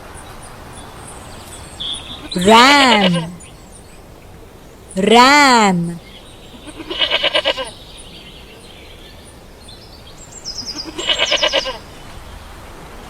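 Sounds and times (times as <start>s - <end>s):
ram bleating: 2.2s - 3.4s, 6.6s - 7.7s, 10.7s - 11.8s.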